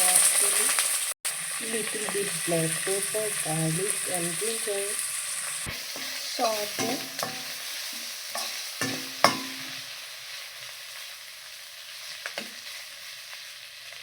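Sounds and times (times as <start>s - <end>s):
vegetables sizzling in hot oil: 0.0s - 14.0s
utensil knocking against pan: 6.0s - 7.6s, 8.4s - 9.8s.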